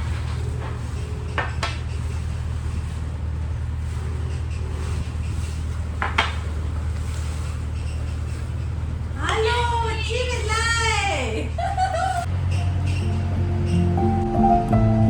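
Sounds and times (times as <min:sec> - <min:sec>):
steady low hum: 0:00.0 - 0:15.0
dishes clinking: 0:12.4 - 0:14.0.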